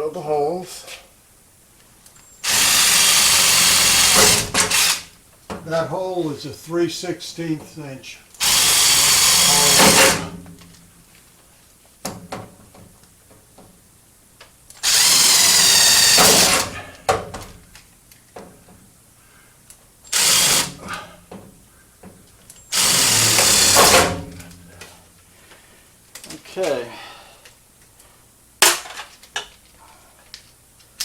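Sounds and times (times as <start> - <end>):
drill boring into metal: 2.4 - 5.1, 8.4 - 10.2, 14.8 - 16.8, 20.1 - 20.8, 22.6 - 24.2.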